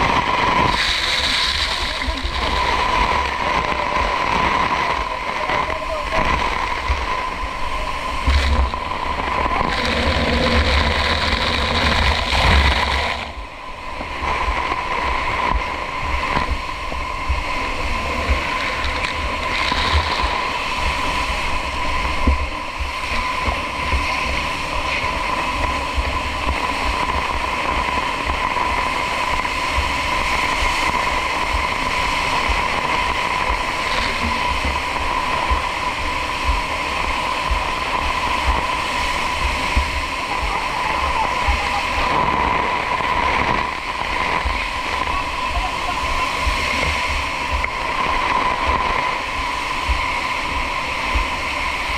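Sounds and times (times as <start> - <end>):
constant whine: 0.0 - 51.9
engine noise: 0.0 - 51.9
rushing water: 0.0 - 51.9
wind buffeting microphone: 0.0 - 51.9.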